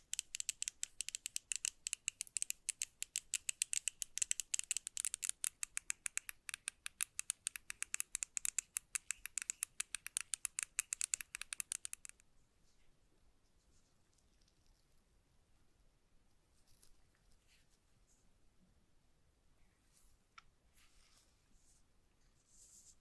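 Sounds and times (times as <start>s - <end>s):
mouse clicking: 0.0s - 12.2s.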